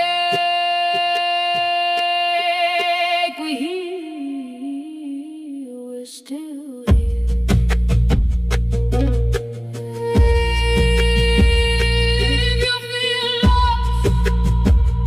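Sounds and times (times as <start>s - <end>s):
solo singing voice: 0.0s - 7.4s, 9.8s - 15.0s
background music: 6.9s - 15.0s
drums: 6.9s - 15.0s.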